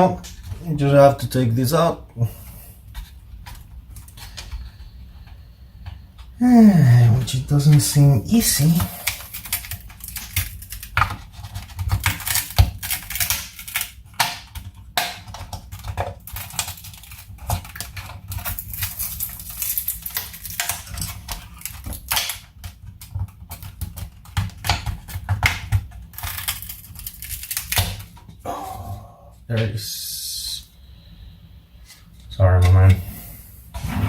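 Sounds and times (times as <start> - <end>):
clicks and crinkles of thin plastic: 7.2 - 28.4.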